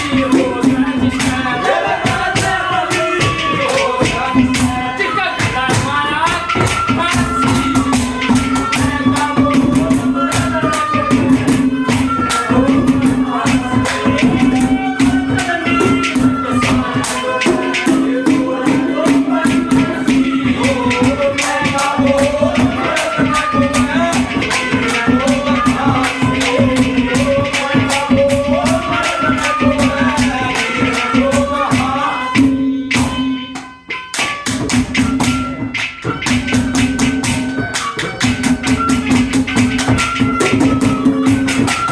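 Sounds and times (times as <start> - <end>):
jingling and tapping percussion: 0.0 - 41.9.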